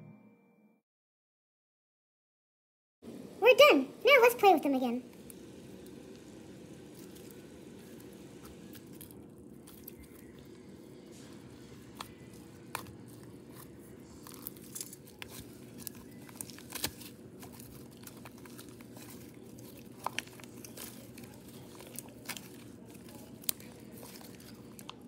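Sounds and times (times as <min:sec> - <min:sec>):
slime crackling and popping: 0:05.2 - 0:10.6, 0:11.8 - 0:25.0.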